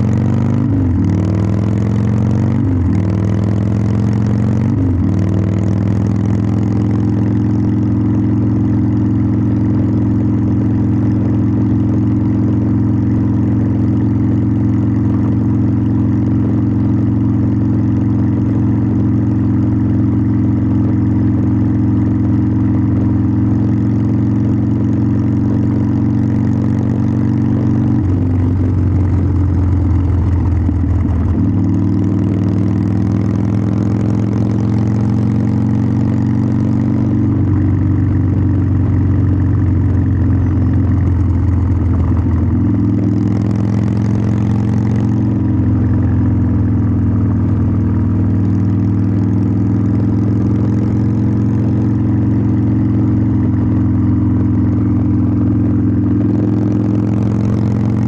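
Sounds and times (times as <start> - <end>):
motorcycle exhaust note: 0.0 - 58.0.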